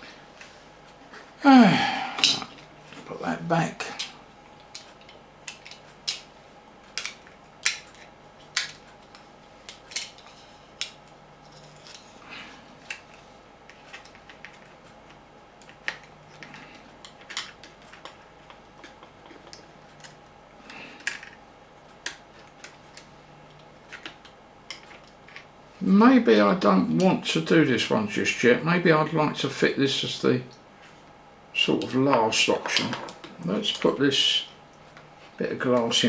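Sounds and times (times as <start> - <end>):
small parts clicking and tapping: 4.0 - 12.2, 12.8 - 20.3, 21.0 - 25.5.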